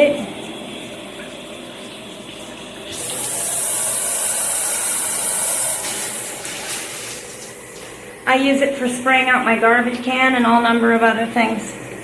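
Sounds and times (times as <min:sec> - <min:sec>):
shower head spraying water: 0:02.9 - 0:07.9.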